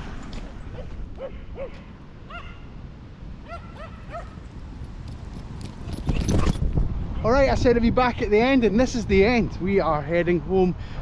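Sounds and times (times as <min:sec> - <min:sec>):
dog yipping: 0:00.8 - 0:02.6, 0:03.5 - 0:04.4.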